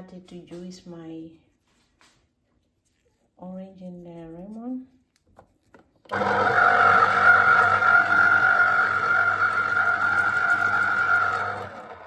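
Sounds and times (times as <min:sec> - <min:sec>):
electric juicer motor whirring: 0:06.1 - 0:12.0.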